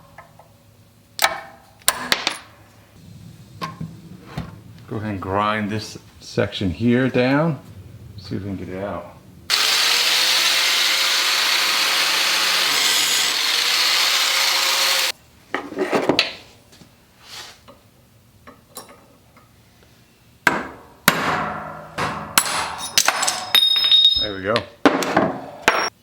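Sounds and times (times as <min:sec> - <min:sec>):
grinder grinding metal: 0:09.5 - 0:15.1
sharp knocks on metal: 0:20.5 - 0:22.8.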